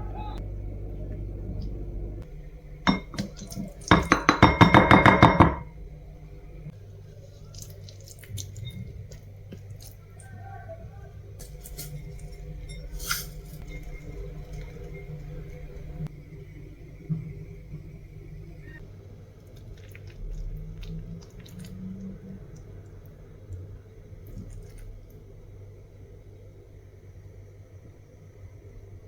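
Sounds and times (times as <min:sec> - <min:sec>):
metal utensil clinking on dish: 0:02.9 - 0:05.6.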